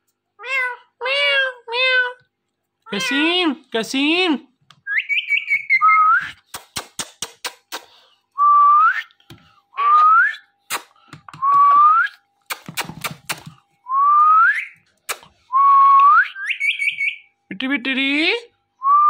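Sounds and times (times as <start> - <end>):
parrot whistling rising notes: 4.9 - 6.4, 15.7 - 17.3.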